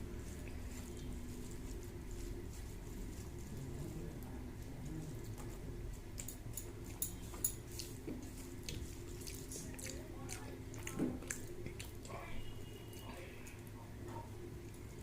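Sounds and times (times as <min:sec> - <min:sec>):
steady low hum: 0:00.0 - 0:15.0
person chewing wetly: 0:05.2 - 0:13.7.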